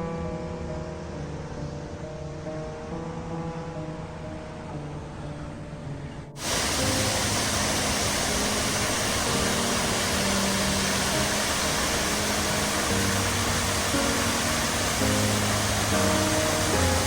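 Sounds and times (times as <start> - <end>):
background music: 0.0 - 17.0
loud steady rushing noise: 6.4 - 17.0.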